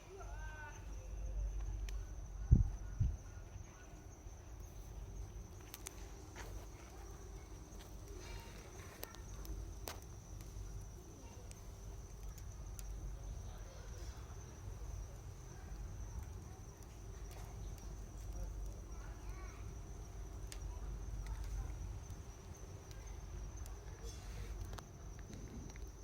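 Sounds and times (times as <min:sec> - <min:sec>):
campfire crackling and popping: 0:04.6 - 0:26.0.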